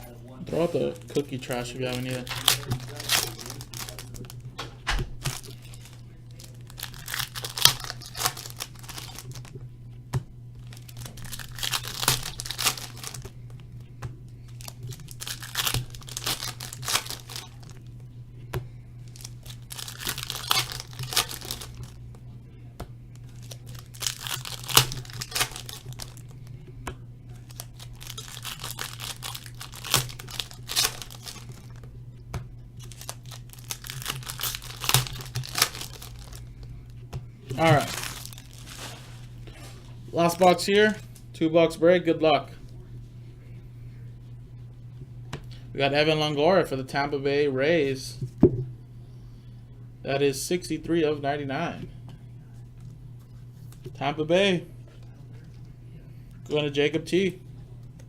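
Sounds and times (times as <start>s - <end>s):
steady low hum: 0.0s - 58.0s
foil wrappers tearing and crinkling: 0.5s - 4.4s, 5.1s - 9.6s, 10.6s - 13.4s, 14.4s - 17.9s, 19.1s - 22.1s, 23.2s - 26.6s, 27.3s - 31.8s, 32.8s - 36.6s, 37.5s - 39.4s.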